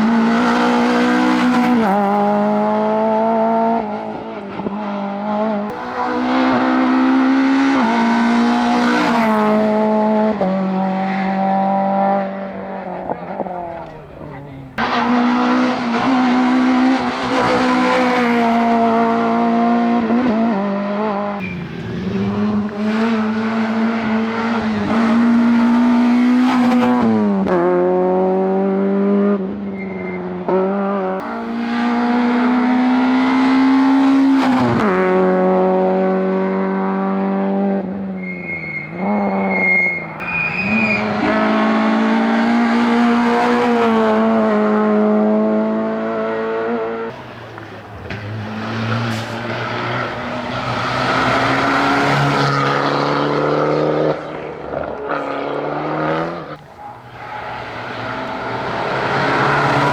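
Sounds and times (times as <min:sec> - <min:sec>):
rally car engine revving: 0:00.0 - 0:59.9
tyre squeals: 0:21.4 - 0:22.6, 0:29.6 - 0:30.4, 0:38.1 - 0:41.4, 0:56.7 - 0:59.9.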